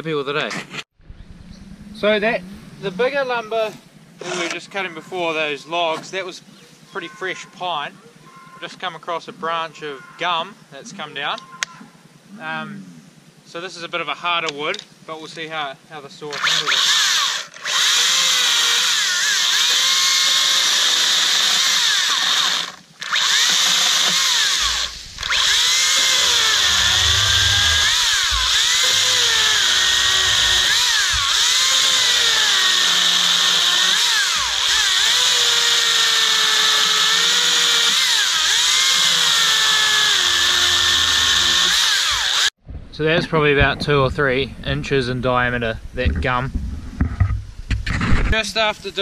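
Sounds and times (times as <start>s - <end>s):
chainsaw cutting branch: 16.4s - 42.5s.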